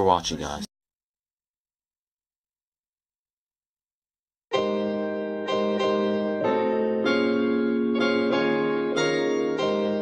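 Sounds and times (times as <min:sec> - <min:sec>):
electric piano chords: 0:04.5 - 0:10.0.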